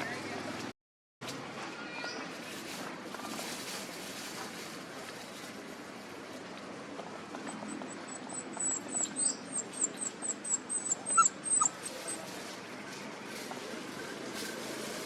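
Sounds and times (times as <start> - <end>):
puppies whimpering: 7.5 - 12.3.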